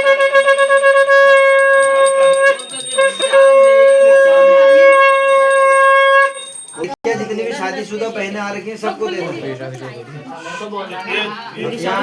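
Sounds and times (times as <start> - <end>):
conch shell blown: 0.0 - 6.6
bell ringing rapidly: 0.0 - 7.0.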